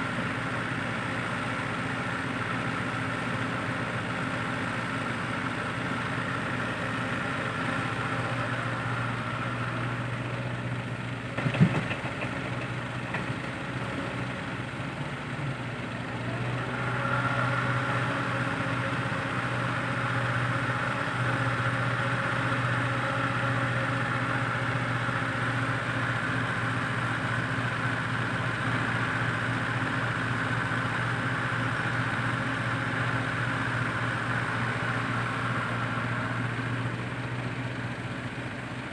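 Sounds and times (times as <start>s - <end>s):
heavy diesel machinery running: 0.0s - 38.9s
sharp clunk: 11.4s - 12.2s.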